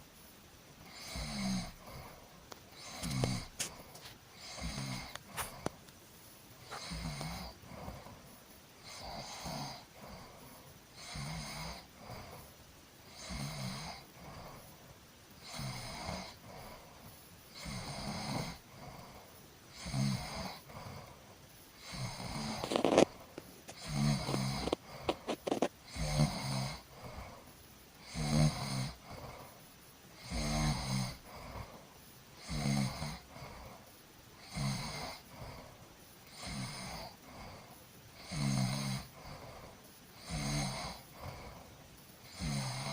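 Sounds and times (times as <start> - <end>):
person snoring: 0.8 - 2.2, 2.8 - 5.7, 6.6 - 8.2, 8.8 - 12.4, 15.4 - 16.9, 17.6 - 21.1, 21.8 - 27.4, 28.0 - 29.5, 30.2 - 31.8, 32.4 - 33.8, 34.4 - 35.7, 36.3 - 42.9.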